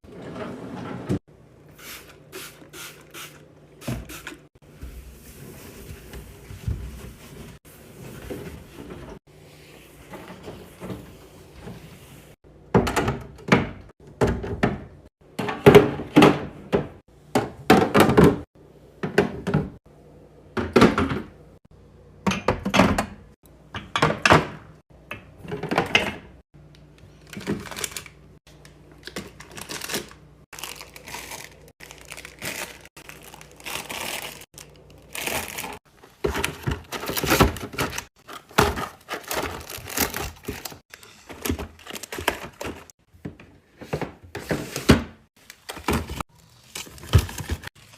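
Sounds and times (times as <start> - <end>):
items being set down: 35.2 - 47.8.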